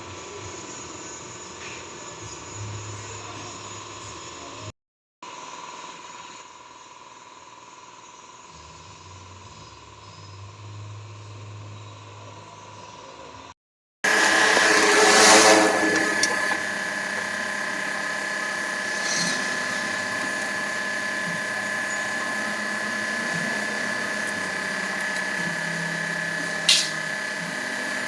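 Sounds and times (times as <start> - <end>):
engine running: 5.4 - 28.0
power steering pump whining: 14.1 - 28.0
sharp click: 26.6 - 27.0.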